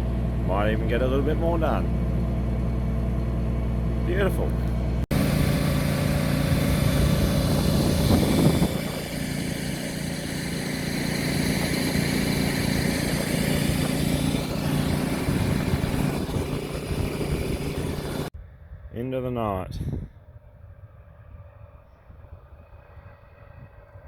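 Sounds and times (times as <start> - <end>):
combine harvester running: 0.0 - 18.3.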